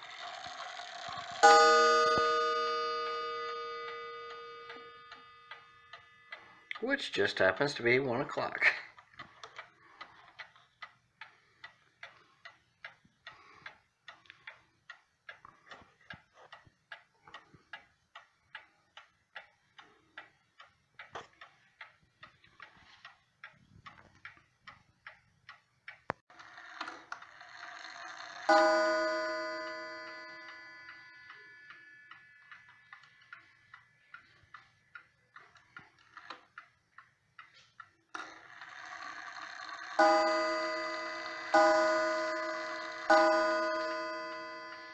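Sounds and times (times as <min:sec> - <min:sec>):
clock movement whirring: 0:00.0 - 0:44.9
clock ticking: 0:00.0 - 0:44.9
clock gong strike: 0:01.4 - 0:05.1, 0:28.5 - 0:30.8, 0:40.0 - 0:44.9.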